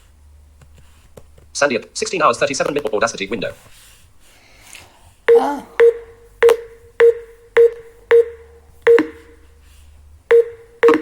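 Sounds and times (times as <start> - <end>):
electronic tick-tones: 5.3 - 9.4, 10.3 - 11.0.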